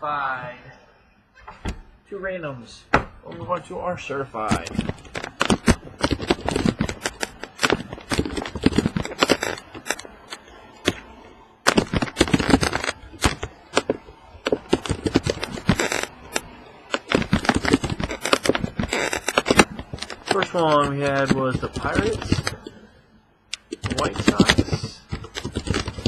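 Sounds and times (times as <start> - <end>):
cards and paper rustling: 4.4 - 11.1, 11.7 - 22.8, 23.6 - 26.0.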